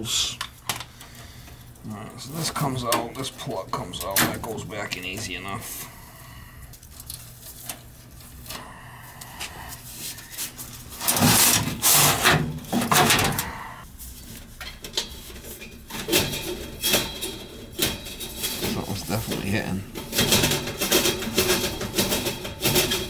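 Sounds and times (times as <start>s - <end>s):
blower scraping and knocking: 9.4s - 13.5s.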